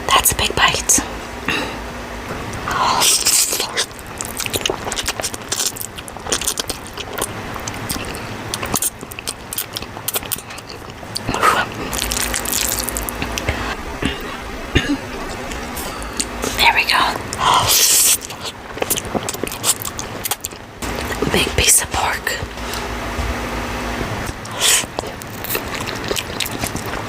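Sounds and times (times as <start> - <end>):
wet chewing of noodles: 2.9 - 21.5, 24.2 - 27.0
mouth clicks and smacks: 3.1 - 14.2, 17.2 - 21.2, 24.3 - 27.0.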